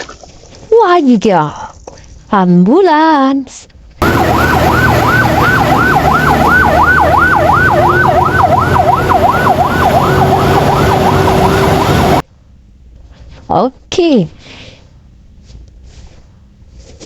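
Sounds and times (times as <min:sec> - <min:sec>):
ambulance siren yelping: 0:04.0 - 0:12.2.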